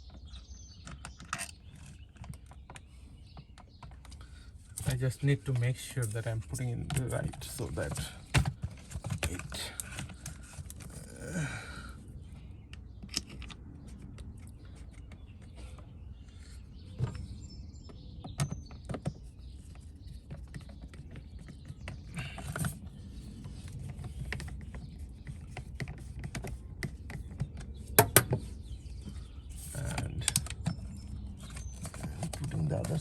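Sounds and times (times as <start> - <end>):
plastic cover plate clicks and scrapes: 29.1 - 33.0.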